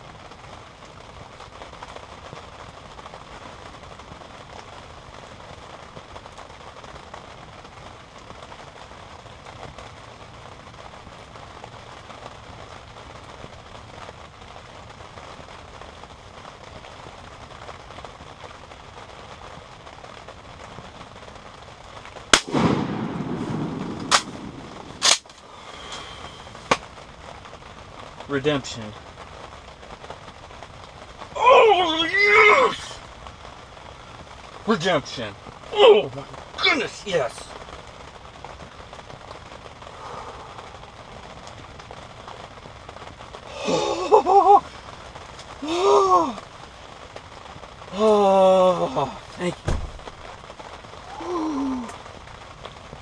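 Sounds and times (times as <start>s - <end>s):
steady rain hiss: 0.0s - 53.0s
shotgun blast with echo: 22.3s - 25.2s.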